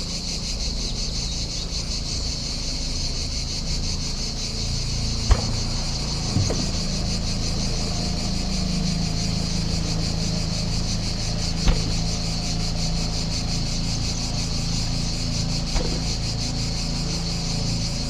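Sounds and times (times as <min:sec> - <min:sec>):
cicadas buzzing: 0:00.0 - 0:18.0
short sharp knocks: 0:05.3 - 0:07.0.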